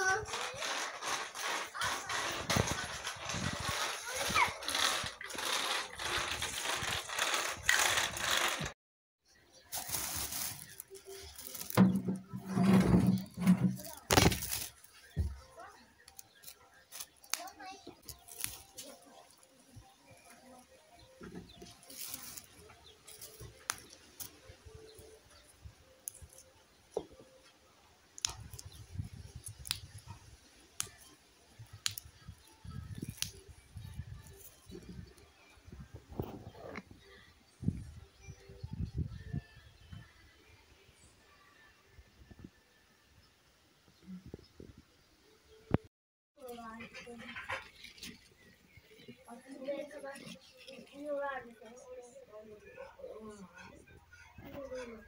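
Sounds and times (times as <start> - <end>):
green beans snapping: 16.1 - 19.0, 28.2 - 30.0, 31.8 - 32.2, 32.9 - 33.4.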